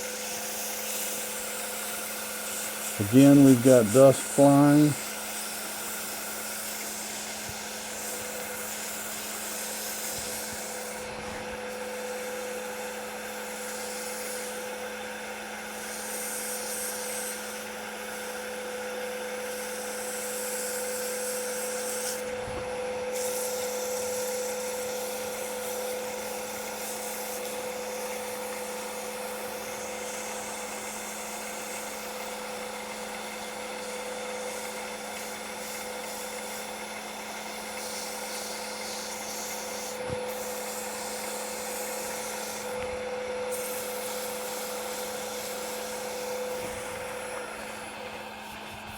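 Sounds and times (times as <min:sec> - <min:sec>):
sandpaper hissing on wood: 0:00.0 - 0:22.3, 0:23.1 - 0:48.9
wood lathe humming: 0:00.0 - 0:48.9.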